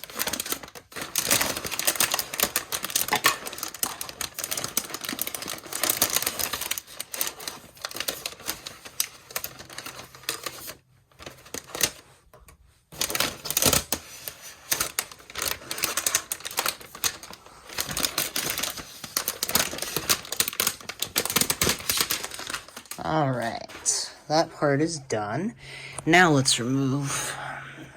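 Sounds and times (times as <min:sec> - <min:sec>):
plastic film peeling crackling: 0:00.0 - 0:24.4.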